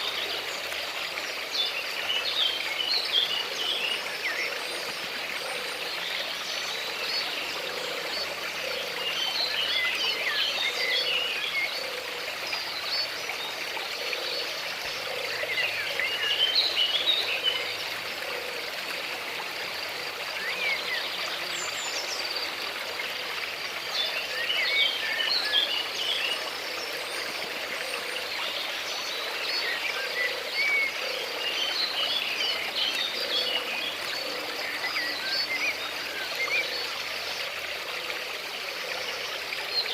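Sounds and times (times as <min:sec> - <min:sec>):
stream water running: 0:00.0 - 0:39.9
birds singing and chirping: 0:24.0 - 0:37.2.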